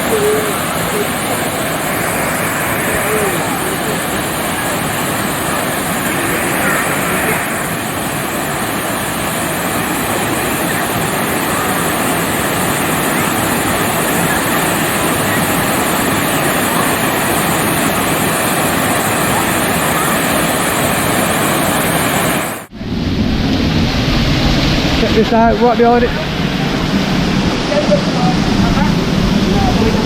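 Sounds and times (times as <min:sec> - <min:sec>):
waterfall rushing: 0:00.0 - 0:22.7.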